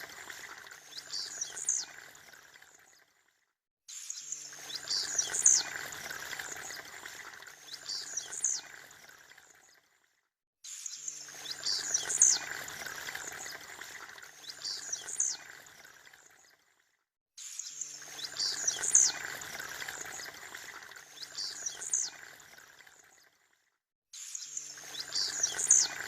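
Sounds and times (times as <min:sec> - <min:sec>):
bird singing buzzy high song: 0:00.9 - 0:02.0, 0:03.9 - 0:05.8, 0:07.7 - 0:08.8, 0:10.7 - 0:12.5, 0:14.4 - 0:15.5, 0:17.4 - 0:19.2, 0:21.2 - 0:22.2, 0:24.2 - 0:26.0.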